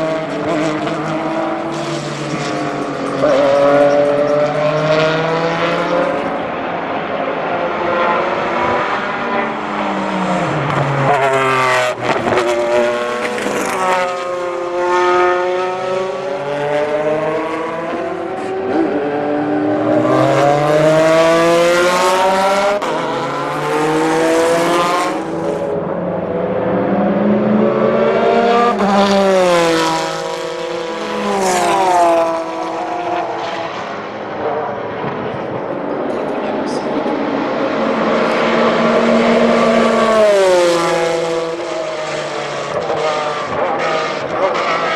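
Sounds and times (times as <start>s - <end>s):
racing engine revving: 0.0s - 44.9s.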